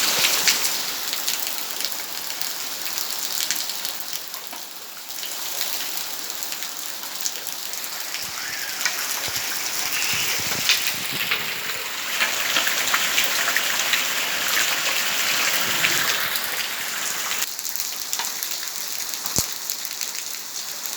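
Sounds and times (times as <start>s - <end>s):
rain hissing: 5.1s - 17.5s
raindrops tapping on surfaces: 7.8s - 20.2s.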